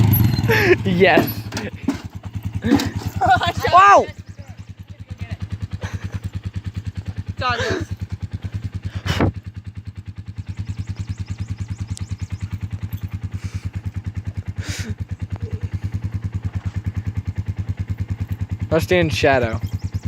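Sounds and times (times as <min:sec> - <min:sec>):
motorcycle engine running: 0:00.0 - 0:20.0.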